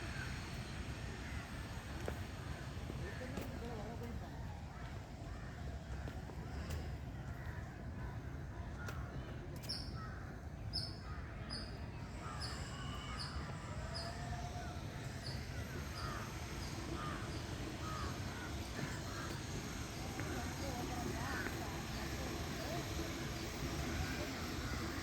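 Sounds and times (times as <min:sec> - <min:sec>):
crows cawing: 0:00.1 - 0:00.5, 0:15.8 - 0:20.3, 0:21.3 - 0:21.6, 0:24.1 - 0:25.0.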